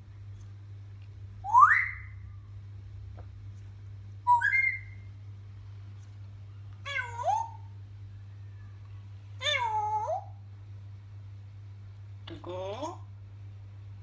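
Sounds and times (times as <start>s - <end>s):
parrot whistling calls: 1.4s - 2.2s, 4.2s - 5.1s.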